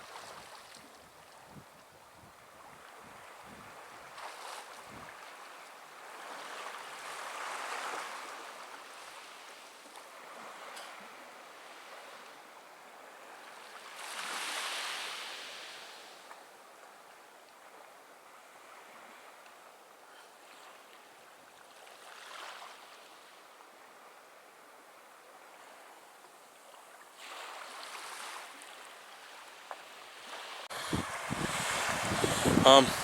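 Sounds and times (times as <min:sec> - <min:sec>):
ocean surf on a beach: 0:02.4 - 0:20.7, 0:27.2 - 0:33.0
wind buffeting microphone: 0:30.7 - 0:33.0.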